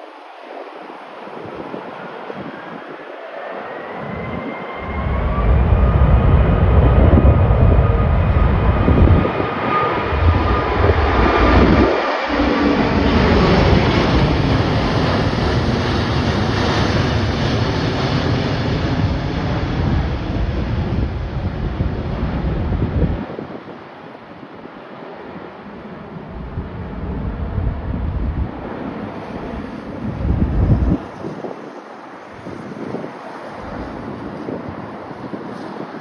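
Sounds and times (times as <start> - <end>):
wind buffeting microphone: 0.0 - 24.8, 26.1 - 36.0
jet engines rumbling: 0.0 - 36.0
high engine whine: 2.4 - 23.4.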